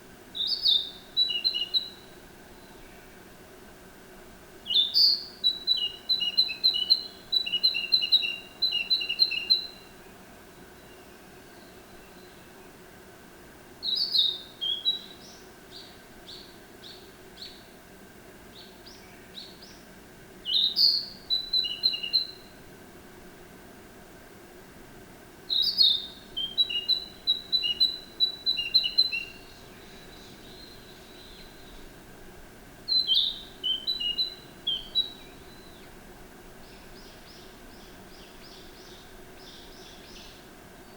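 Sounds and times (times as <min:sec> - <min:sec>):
bird singing whistled notes: 0:00.4 - 0:03.0, 0:04.7 - 0:09.9, 0:13.8 - 0:17.6, 0:20.4 - 0:22.5, 0:25.5 - 0:31.9, 0:32.9 - 0:35.9, 0:36.6 - 0:40.9.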